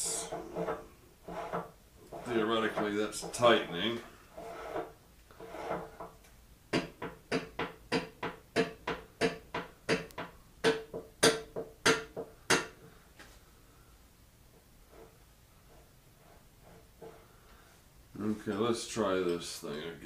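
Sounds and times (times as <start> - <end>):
sharp metallic taps: 6.7 - 12.7.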